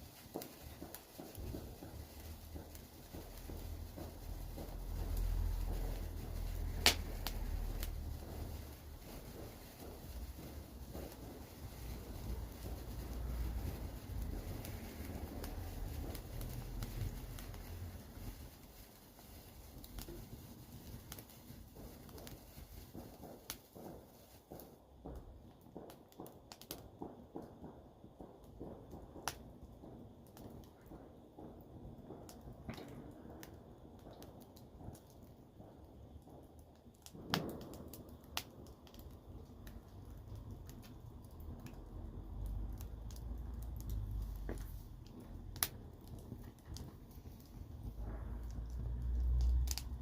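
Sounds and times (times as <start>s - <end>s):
fire crackling and popping: 0.0s - 50.0s
low steady rumble: 1.4s - 18.8s, 39.2s - 50.0s.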